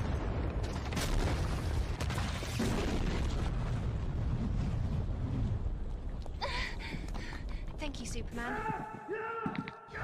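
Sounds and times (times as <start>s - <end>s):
low explosion rumble: 0.0s - 6.2s.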